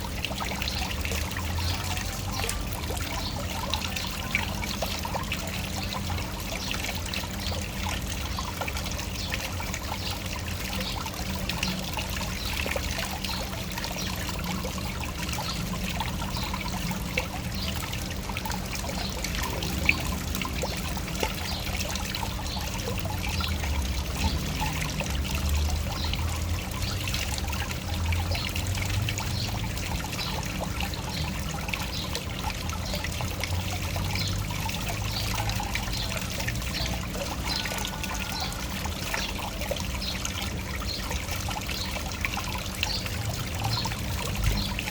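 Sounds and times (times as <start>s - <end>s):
waterfall pouring and splashing: 0.0s - 44.9s.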